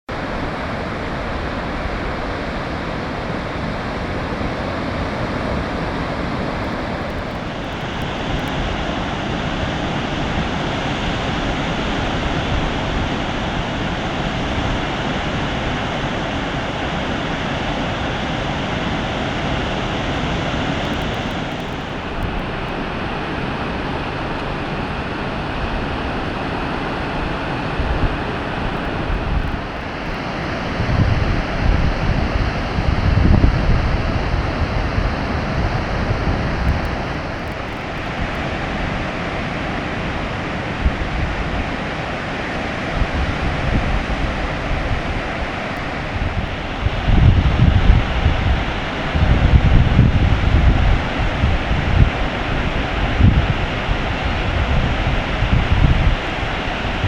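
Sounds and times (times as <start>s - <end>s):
ocean surf rushing: 0.1s - 57.0s
wind noise on microphone: 0.1s - 57.0s.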